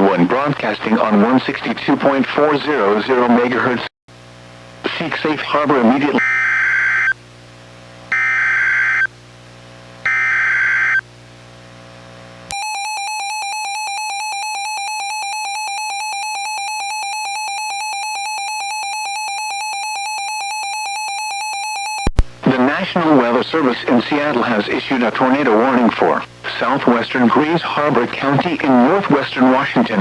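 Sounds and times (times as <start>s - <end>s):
pulsing electronic alarm tone: 6.2s - 7.1s, 8.1s - 9.1s, 10.1s - 11.0s, 12.5s - 22.1s.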